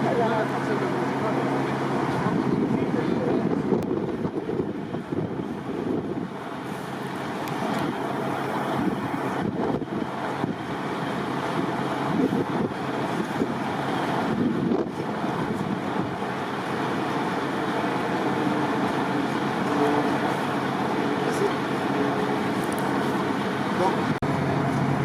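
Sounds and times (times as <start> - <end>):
strong wind on microphone: 1.8 - 10.8, 11.4 - 16.3.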